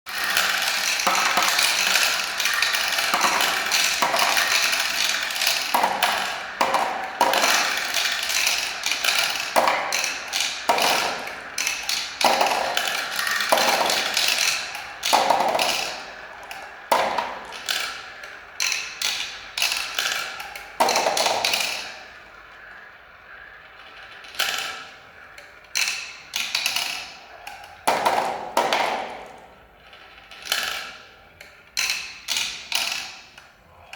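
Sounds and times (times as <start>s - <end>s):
balls rattling down marble run: 0.1s - 33.4s.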